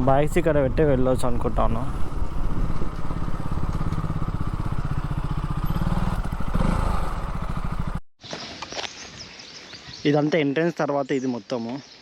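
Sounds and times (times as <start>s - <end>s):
motorcycle engine idling: 0.0s - 8.0s.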